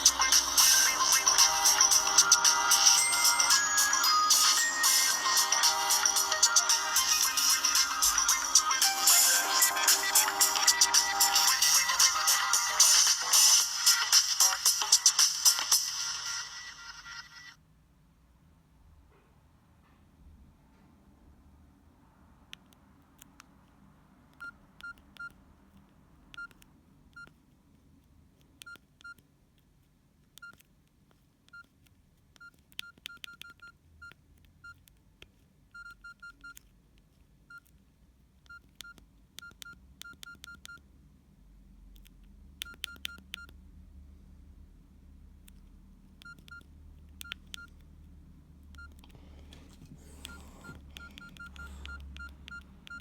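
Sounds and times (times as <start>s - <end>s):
phone keypad beeps: 0.0s - 13.3s, 26.3s - 27.4s, 32.4s - 34.9s, 35.7s - 36.7s, 38.4s - 40.9s, 42.6s - 43.6s, 46.2s - 47.8s, 48.7s - 49.1s, 49.9s - 53.0s
key clicks: 48.7s - 53.0s.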